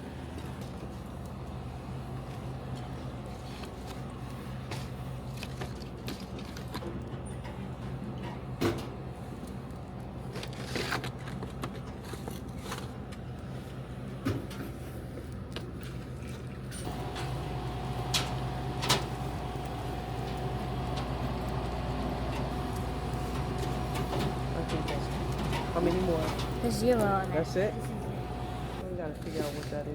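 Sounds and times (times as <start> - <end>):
low machine hum: 16.2 - 29.1.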